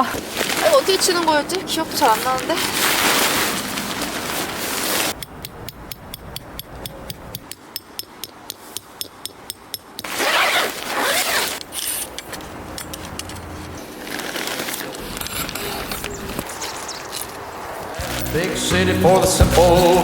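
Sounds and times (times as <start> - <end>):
fabric rustling: 0.0 - 5.2, 10.1 - 12.1, 13.0 - 16.1.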